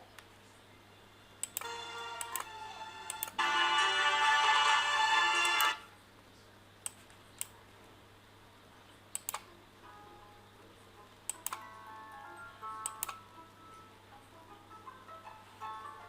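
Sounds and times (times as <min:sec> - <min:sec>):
melodic background music: 0:01.2 - 0:05.9, 0:09.8 - 0:16.0
computer mouse clicks: 0:01.4 - 0:02.5, 0:03.1 - 0:03.4, 0:06.8 - 0:07.6, 0:09.1 - 0:09.5, 0:11.3 - 0:11.6, 0:12.8 - 0:13.2.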